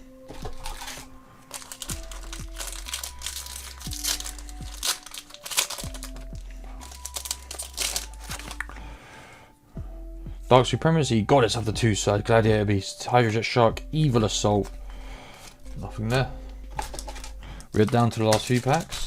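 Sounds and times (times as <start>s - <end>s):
foil pack crinkling and tearing: 0.4s - 8.7s, 16.8s - 19.0s
background music with bassline: 1.9s - 5.0s, 5.8s - 9.0s, 9.8s - 19.0s.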